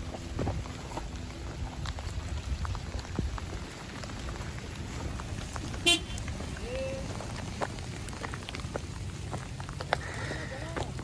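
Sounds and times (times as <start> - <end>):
raindrops ticking: 0.0 - 11.0
steady rain: 0.0 - 11.0
short car horn toot: 5.8 - 6.2.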